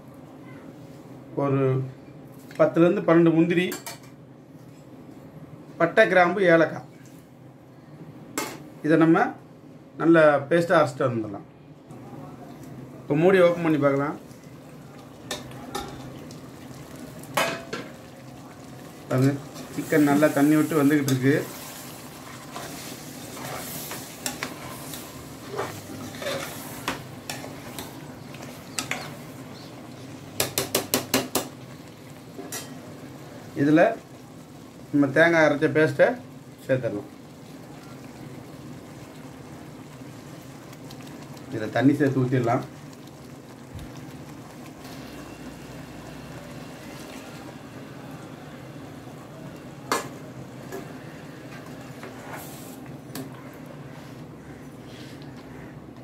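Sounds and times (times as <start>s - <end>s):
low simmering: 11.8s - 56.0s
gravy sizzling and bubbling in pot: 11.9s - 56.0s
metal spoon scraping a pot: 22.3s - 27.8s
taps on pot: 30.4s - 31.5s.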